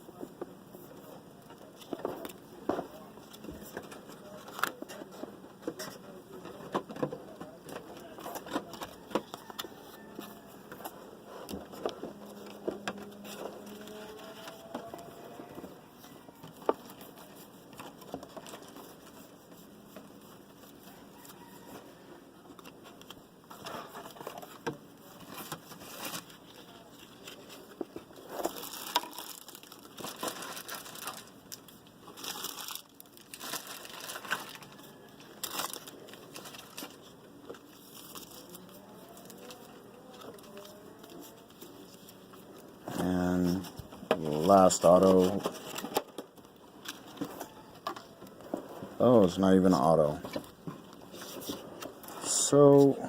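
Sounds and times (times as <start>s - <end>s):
foil wrappers crinkling and tearing: 22.6s - 47.6s.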